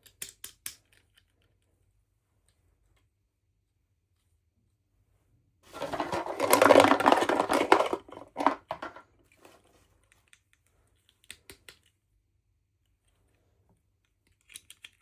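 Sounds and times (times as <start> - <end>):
small objects rustling and scraping: 5.7 - 10.4.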